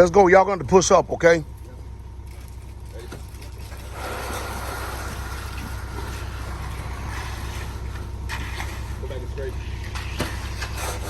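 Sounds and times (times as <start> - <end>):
engine droning: 0.0 - 11.0
hand tools scraping wet concrete: 3.1 - 11.0.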